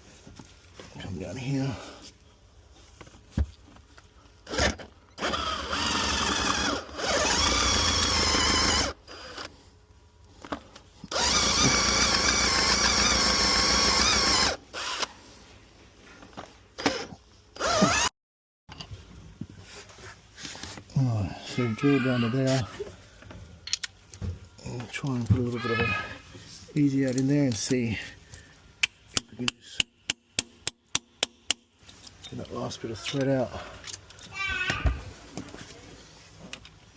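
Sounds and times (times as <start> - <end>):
power drill whining: 4.4 - 9.5, 11.1 - 15.1, 16.8 - 18.1.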